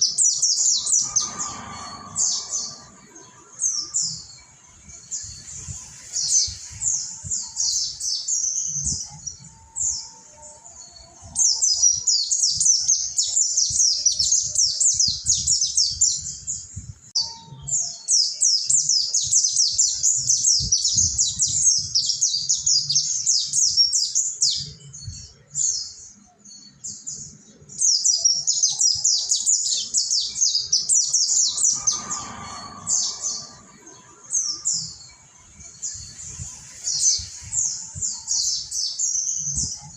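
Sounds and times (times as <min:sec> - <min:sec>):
bird twittering chirps: 0:00.0 - 0:10.1, 0:18.2 - 0:39.9.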